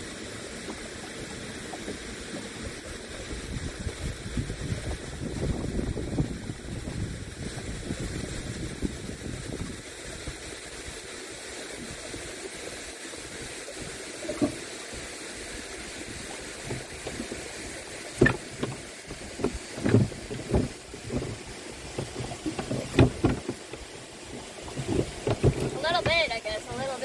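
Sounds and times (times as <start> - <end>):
canoe paddle strokes in water: 0.0 - 27.0
wind and water hiss: 0.0 - 27.0
short uneven splashes and knocks: 11.8 - 27.0.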